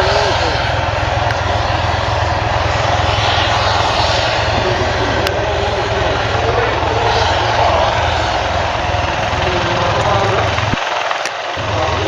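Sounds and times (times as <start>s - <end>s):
helicopter engine noise: 0.0s - 12.0s
helicopter rotor beating: 0.0s - 12.0s.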